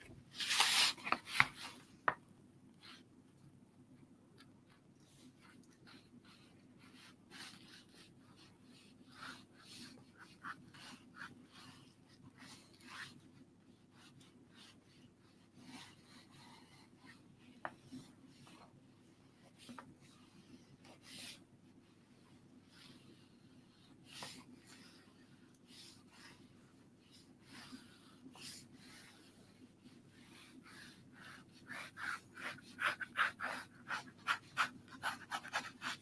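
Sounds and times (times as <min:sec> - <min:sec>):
pen scratching on paper: 0:05.2 - 0:13.2, 0:27.1 - 0:36.0.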